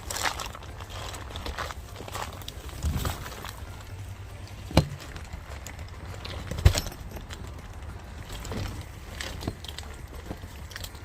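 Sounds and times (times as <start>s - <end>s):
sharp clicks and knocks: 4.4s - 11.0s.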